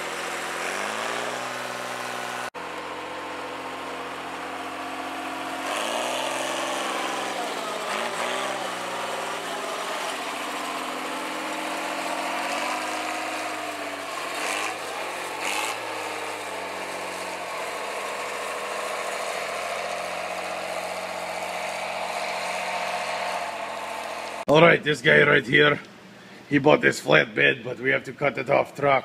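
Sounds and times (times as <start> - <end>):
diesel engine running: 0.0 - 26.5.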